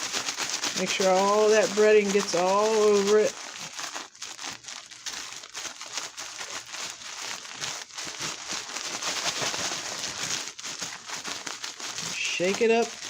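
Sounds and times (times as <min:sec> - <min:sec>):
bag of breadcrumbs shaken: 0:00.0 - 0:13.0.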